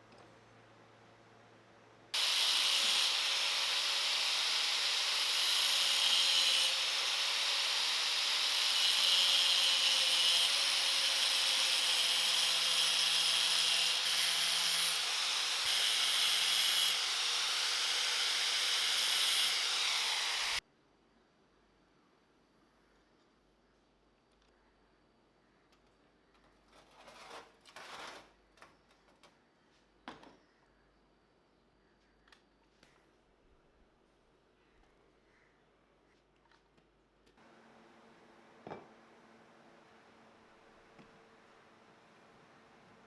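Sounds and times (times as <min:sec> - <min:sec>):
power tool grinding: 0:02.2 - 0:20.6.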